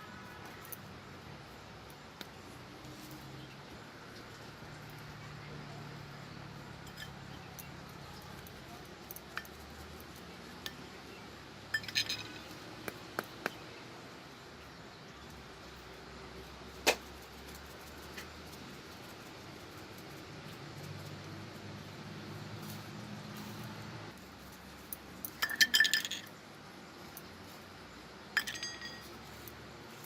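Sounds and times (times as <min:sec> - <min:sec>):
clinks of hard objects handled: 0:06.6 - 0:11.1, 0:11.7 - 0:13.6, 0:24.4 - 0:26.4, 0:28.2 - 0:30.0.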